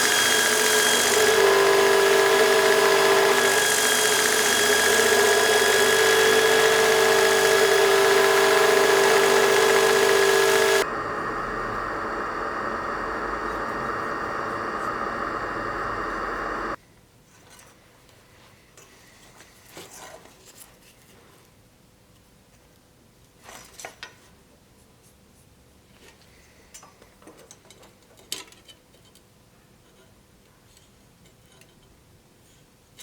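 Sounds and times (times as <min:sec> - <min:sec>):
loud steady machine noise: 0:00.0 - 0:16.8.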